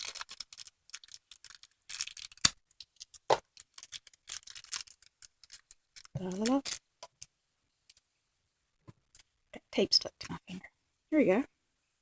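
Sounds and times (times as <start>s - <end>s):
package wrapping rustling: 0.0s - 6.9s.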